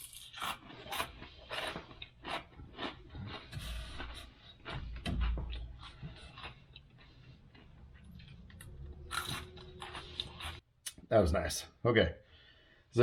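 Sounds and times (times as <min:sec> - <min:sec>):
person crunching cereal: 0:00.0 - 0:05.0, 0:05.6 - 0:10.6.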